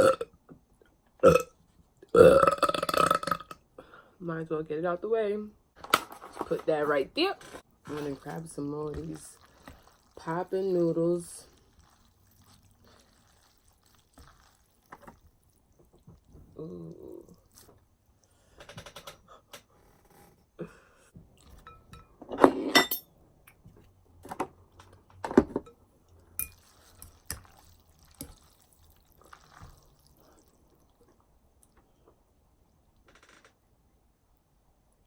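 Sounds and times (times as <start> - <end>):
utensils clinking against a dish: 21.5 - 23.1.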